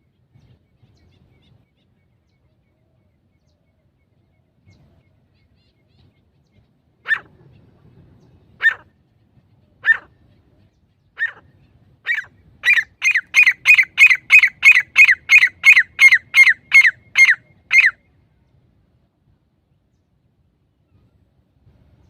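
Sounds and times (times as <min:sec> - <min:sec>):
francolin calling: 0:11.1 - 0:18.0.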